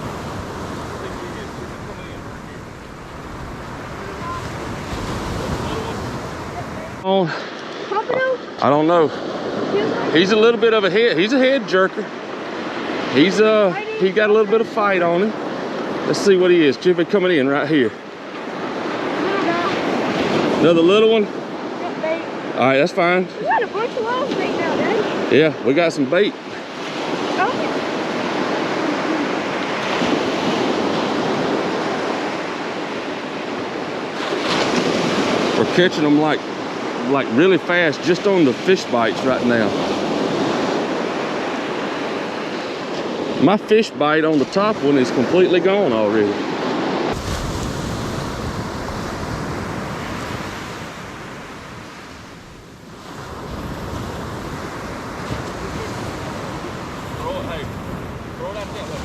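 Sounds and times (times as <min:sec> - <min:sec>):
wind buffeting microphone: 0:00.0 - 0:07.1, 0:23.4 - 0:25.3, 0:46.4 - 0:59.0
ocean surf breaking on beach: 0:00.0 - 0:59.0.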